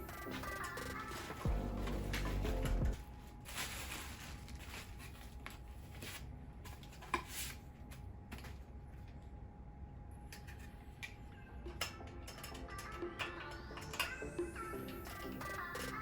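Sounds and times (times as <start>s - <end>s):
clicks and rustling of parts handled: 0.3s - 3.0s, 10.3s - 14.2s.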